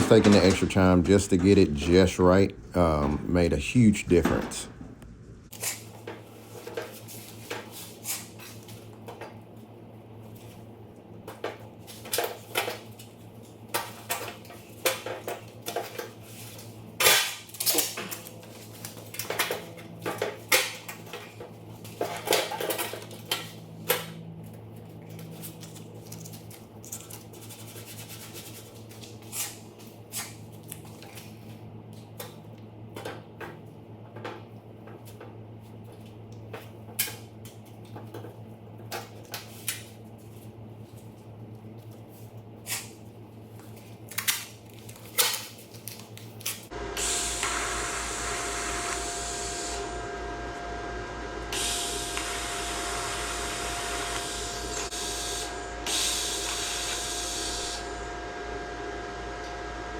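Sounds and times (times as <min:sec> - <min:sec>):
steady low hum: 0:46.7 - 0:59.9.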